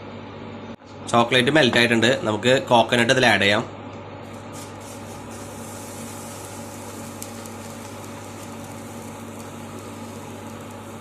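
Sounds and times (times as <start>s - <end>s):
even hiss: 4.6s - 11.0s.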